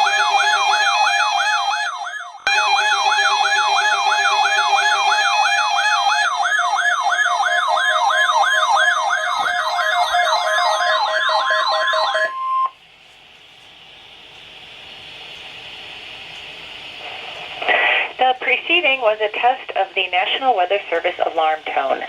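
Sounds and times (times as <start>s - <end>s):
steady warning alarm tone: 0.0s - 12.8s
sweeping alarm: 0.0s - 12.8s
radio hiss: 13.2s - 22.0s.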